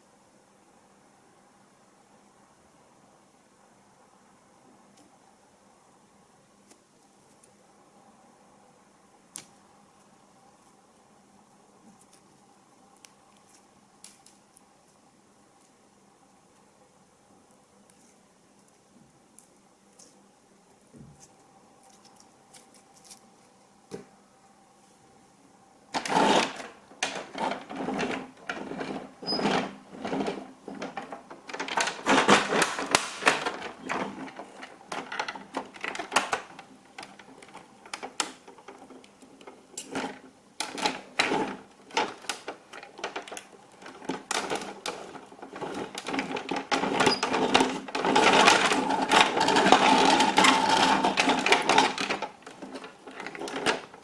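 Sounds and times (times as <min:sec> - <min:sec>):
small hard objects clattering: 0:26.0 - 0:54.0.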